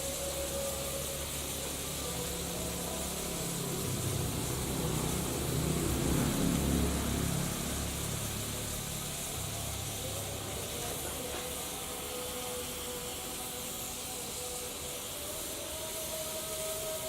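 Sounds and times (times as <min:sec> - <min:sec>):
hot metal sizzling in liquid: 0:00.0 - 0:17.0.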